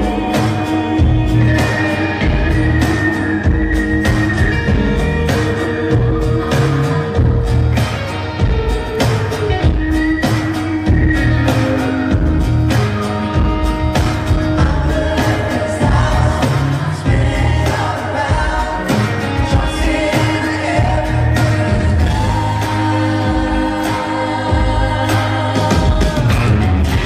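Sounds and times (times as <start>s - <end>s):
voices singing in harmony: 0.0s - 8.0s, 14.4s - 27.0s
country band playing: 0.0s - 27.0s.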